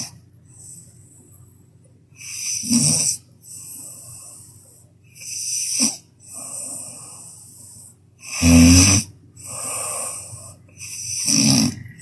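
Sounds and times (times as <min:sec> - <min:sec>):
woman snoring: 0:02.2 - 0:04.1, 0:08.2 - 0:12.0
short snort: 0:02.3 - 0:03.2, 0:08.3 - 0:10.2, 0:10.8 - 0:12.0
breathy exhale: 0:03.4 - 0:05.4, 0:06.2 - 0:08.0, 0:09.4 - 0:12.0.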